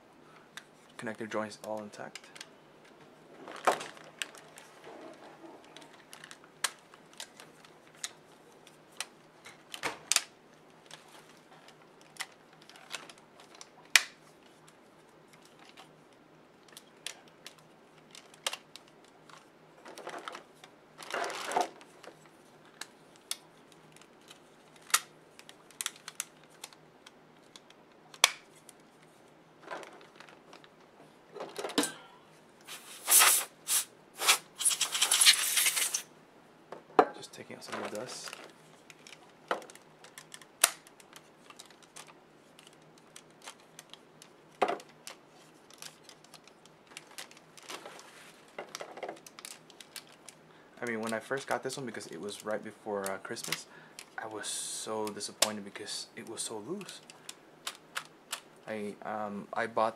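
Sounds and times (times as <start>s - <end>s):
plastic parts clicking: 16.6s - 20.4s, 21.0s - 28.8s, 37.7s - 47.9s, 48.5s - 51.2s, 56.7s - 58.5s
rustling: 45.0s - 50.4s.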